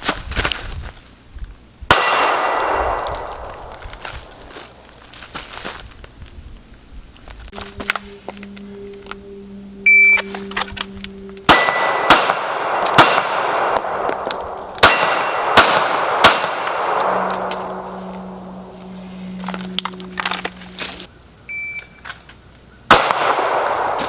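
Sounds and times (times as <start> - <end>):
steel target ringing: 1.9 - 4.1, 9.8 - 21.1, 22.9 - 24.0
short beep: 7.6 - 13.5, 16.4 - 20.8, 21.5 - 22.0
pistol shots: 11.5 - 17.8.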